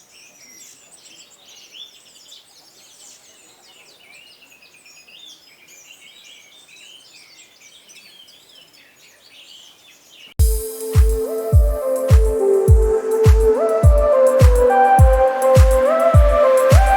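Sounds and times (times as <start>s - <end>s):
thrush singing whistles and chirps: 3.8s - 16.9s.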